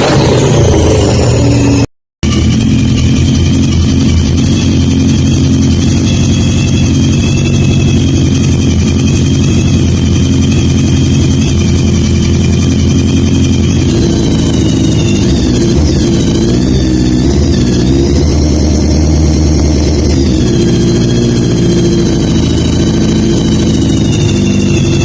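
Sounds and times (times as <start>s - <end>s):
motorcycle engine idling: 2.3s - 25.0s.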